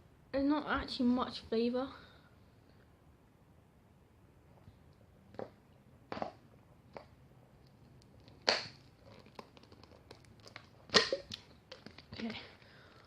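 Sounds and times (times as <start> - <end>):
plastic bottle crinkling: 7.0 - 13.0.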